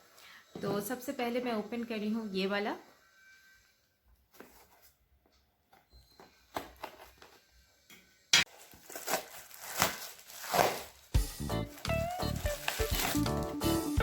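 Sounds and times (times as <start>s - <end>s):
packaging rustling and tearing: 8.5s - 13.6s.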